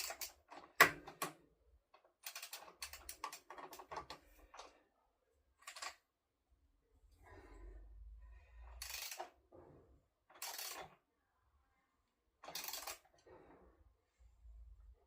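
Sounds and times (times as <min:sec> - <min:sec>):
ratchet spanner clicking: 0:02.2 - 0:03.9, 0:08.8 - 0:09.3, 0:10.4 - 0:10.9, 0:12.5 - 0:13.0.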